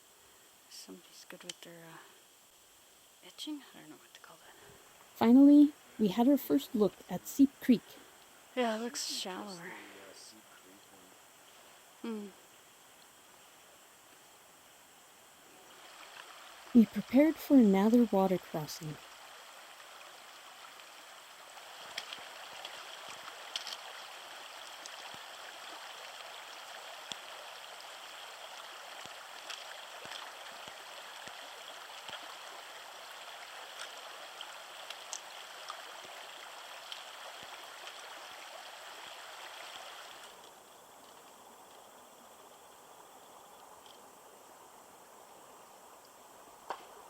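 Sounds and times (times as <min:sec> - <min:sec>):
creek water running over rocks: 0:00.0 - 0:47.0.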